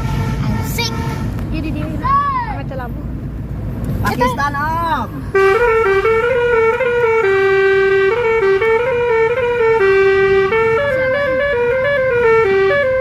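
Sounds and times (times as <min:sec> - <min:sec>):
bus horn playing a melody: 0:00.0 - 0:01.4, 0:05.3 - 0:13.0.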